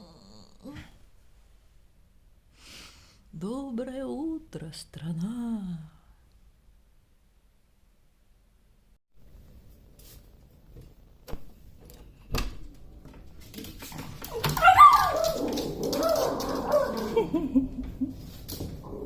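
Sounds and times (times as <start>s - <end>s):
dog whining and whimpering: 14.3s - 17.2s.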